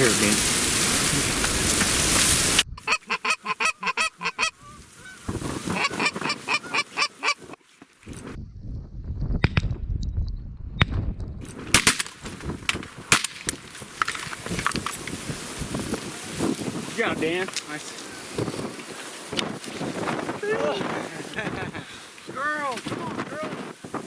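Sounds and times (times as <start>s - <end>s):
goose honking: 2.8s - 7.6s
sharp cracks: 10.8s - 15.2s.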